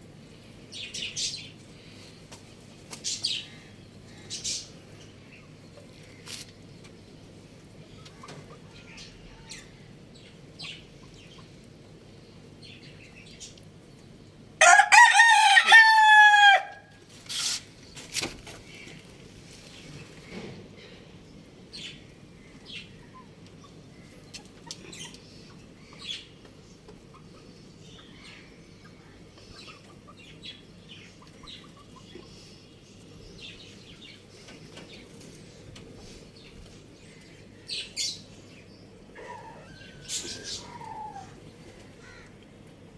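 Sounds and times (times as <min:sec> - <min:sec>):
faint bird calls and clucks: 0:00.0 - 0:42.9
rooster crowing: 0:14.6 - 0:16.9, 0:39.2 - 0:41.4.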